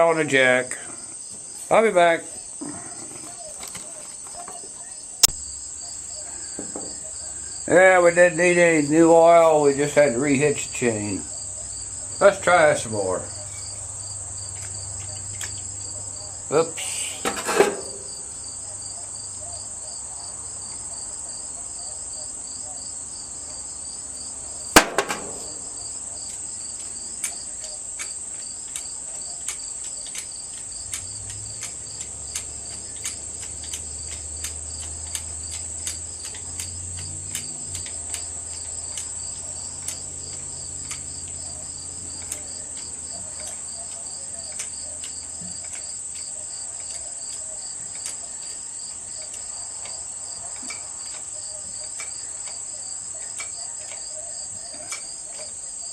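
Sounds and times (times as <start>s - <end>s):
crickets chirping: 0.0s - 55.9s
sharp knock: 24.8s - 25.8s.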